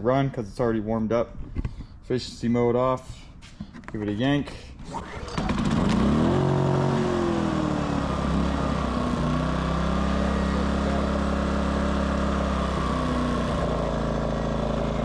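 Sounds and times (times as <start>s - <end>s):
generator engine running: 4.8s - 15.0s.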